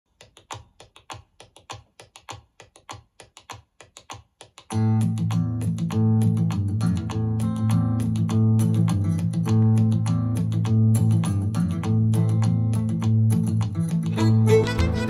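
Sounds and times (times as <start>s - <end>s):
rhythmic percussive hits: 4.7s - 15.0s.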